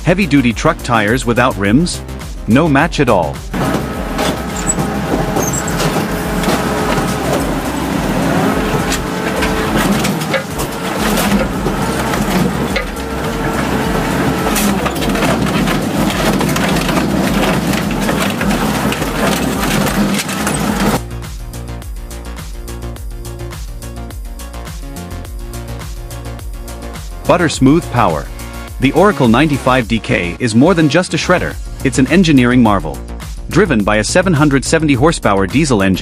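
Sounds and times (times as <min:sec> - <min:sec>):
music: 0:00.0 - 0:36.0
shredder grinding tyres: 0:03.5 - 0:21.1.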